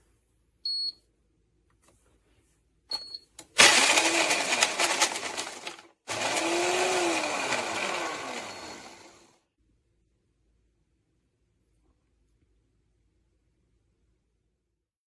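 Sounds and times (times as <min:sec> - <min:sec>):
contents churning: 0:03.6 - 0:09.2
blender motor whirring: 0:03.6 - 0:09.3.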